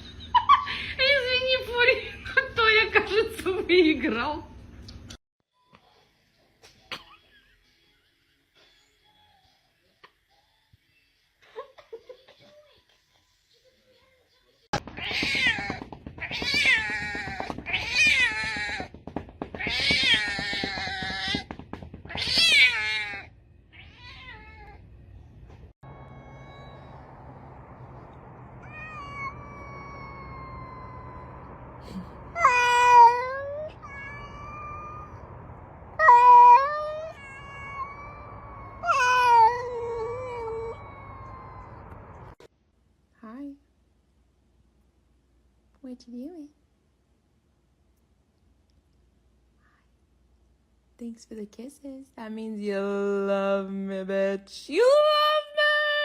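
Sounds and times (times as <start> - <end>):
cat meowing: 22.1 - 24.8, 25.8 - 27.4, 28.6 - 31.7, 32.4 - 35.4, 36.0 - 42.4.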